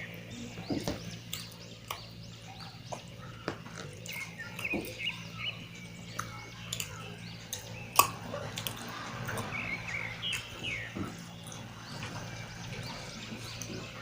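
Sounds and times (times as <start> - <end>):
wet chewing and lip smacks: 1.3 - 3.1, 6.1 - 9.7.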